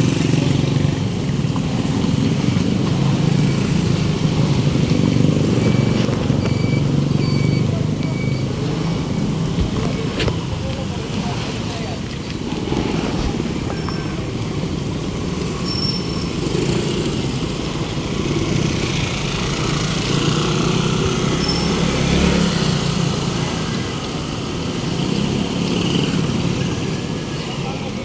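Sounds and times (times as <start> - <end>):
city street traffic: 0.0 - 28.0
vehicle engine passing close: 16.3 - 26.5.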